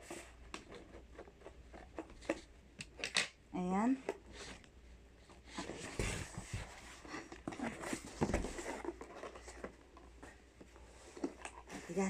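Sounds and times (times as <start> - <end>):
cardboard box rustling and scraping: 5.4 - 12.0.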